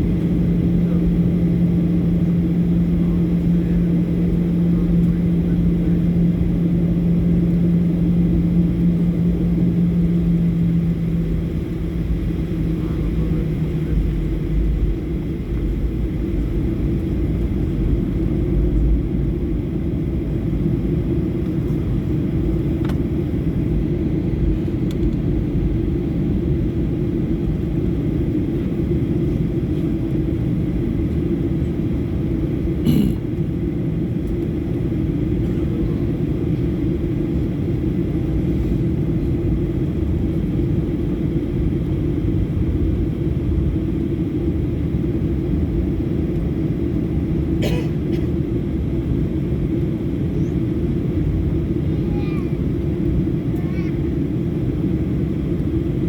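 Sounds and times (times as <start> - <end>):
hum: 0.0 - 56.0
jet engines rumbling: 0.0 - 56.0.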